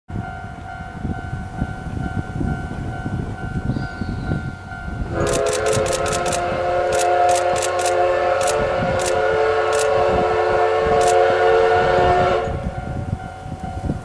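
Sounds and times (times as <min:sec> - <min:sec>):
sharp clicks: 0:05.3 - 0:09.9
steam whistle chord: 0:06.4 - 0:12.8.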